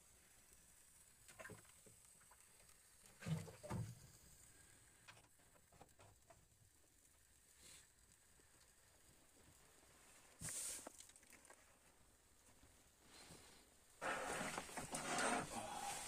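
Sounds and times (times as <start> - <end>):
faint clicks and knocks: 1.2 - 6.8.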